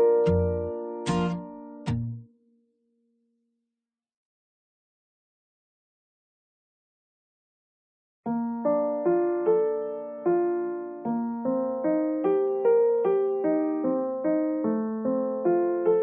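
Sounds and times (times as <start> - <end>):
slow solo piano: 0.0 - 1.8, 8.3 - 16.0.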